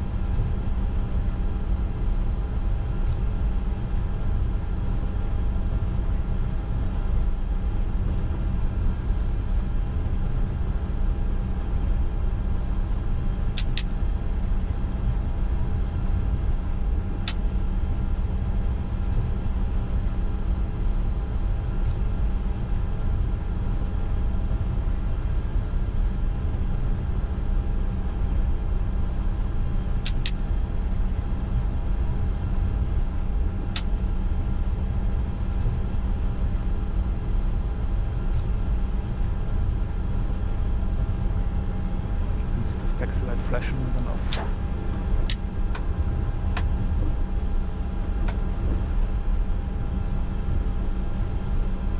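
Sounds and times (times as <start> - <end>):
brief clicks: 13.6 - 13.9, 30.0 - 30.4
jet engines idling: 27.0 - 51.8.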